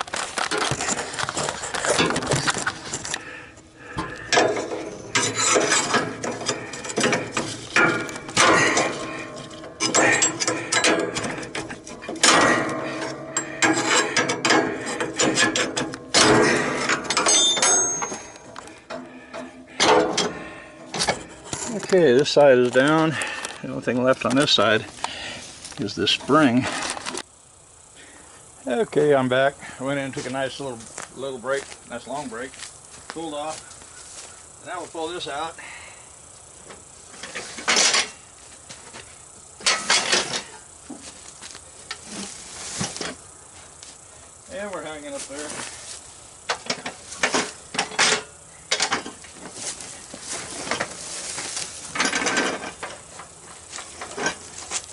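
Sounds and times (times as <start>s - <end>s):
metal clanking and scraping: 0.1s - 24.9s, 36.7s - 41.2s, 46.5s - 54.9s
sharp metal knocks: 4.0s - 21.7s
high metallic ringing: 4.0s - 23.2s.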